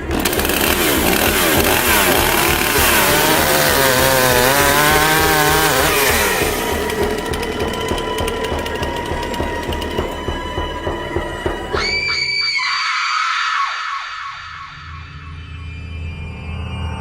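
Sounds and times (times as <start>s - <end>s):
chainsaw revving: 0.0s - 11.7s.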